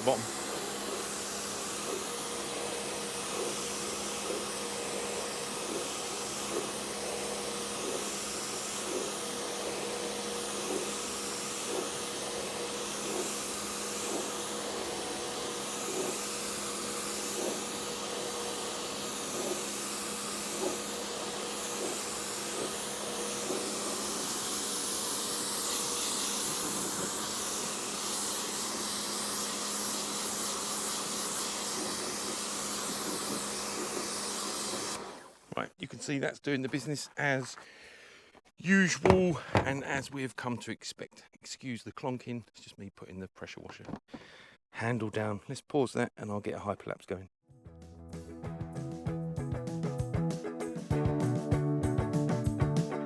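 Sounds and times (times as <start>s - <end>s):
pressure washer motor humming: 0.0s - 35.5s
water jet hissing: 0.0s - 35.5s.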